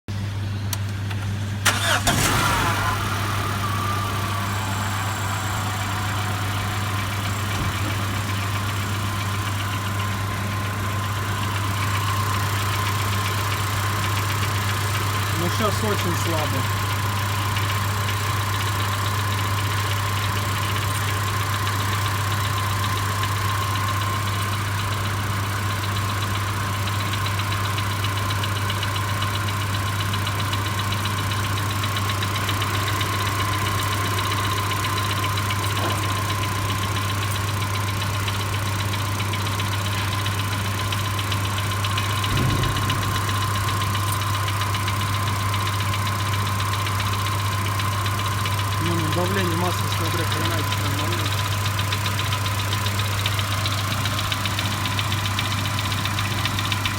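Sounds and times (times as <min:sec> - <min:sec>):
car engine idling: 0:00.2 - 0:56.9
faint engine knock: 0:03.8 - 0:56.9
low thump: 0:06.8 - 0:08.2, 0:42.2 - 0:44.8.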